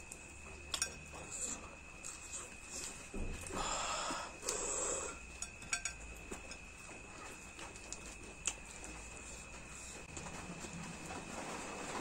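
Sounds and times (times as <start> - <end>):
faint high tone hum: 0.0 - 12.0.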